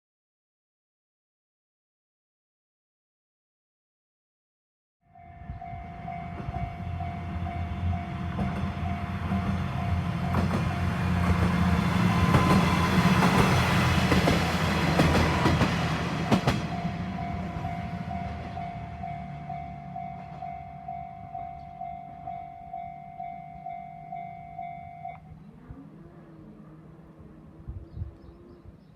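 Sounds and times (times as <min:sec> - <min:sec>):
level crossing warning bell: 0:05.1 - 0:13.2, 0:16.6 - 0:25.3
train engine and wheels rumbling: 0:05.1 - 0:28.2.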